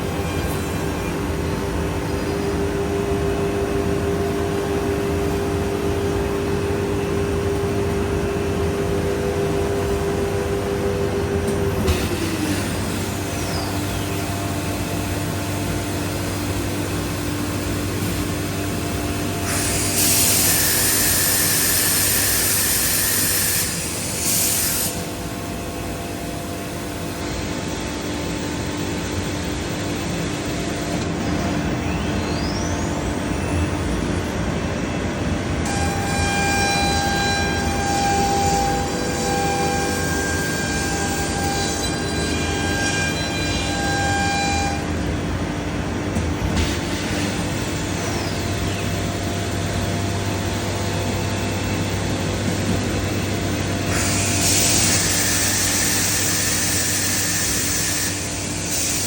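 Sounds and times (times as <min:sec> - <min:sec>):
machine hum: 0:00.0 - 0:59.0
loud hiss: 0:19.4 - 0:25.4.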